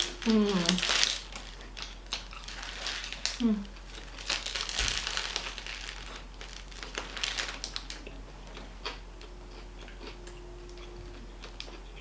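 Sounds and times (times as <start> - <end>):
paper wrapper crinkling: 0.0 - 8.0.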